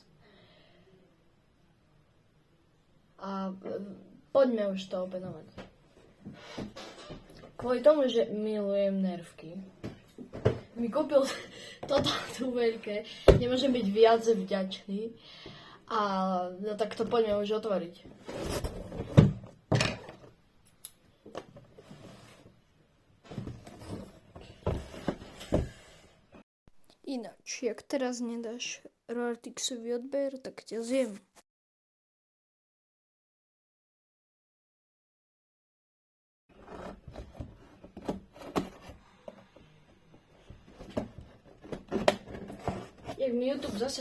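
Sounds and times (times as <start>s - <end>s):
cardboard box knocks and scraping: 9.8s - 10.7s, 23.2s - 25.9s, 40.6s - 43.7s.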